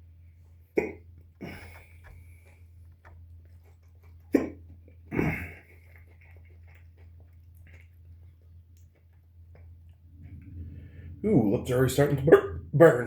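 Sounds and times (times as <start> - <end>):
man hiccuping: 0.8 - 1.7, 4.3 - 5.6
breathy sound: 10.1 - 13.0.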